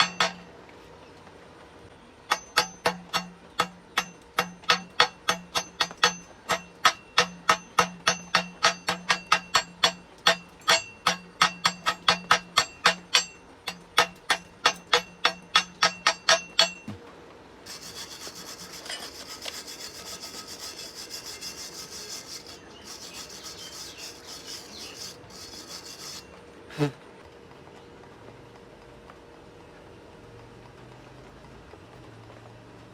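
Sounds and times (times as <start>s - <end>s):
chipping hammer striking metal: 0.0s - 0.5s, 2.3s - 17.0s
wire brush scrubbing metal: 0.0s - 0.5s, 2.3s - 16.9s, 17.7s - 26.3s.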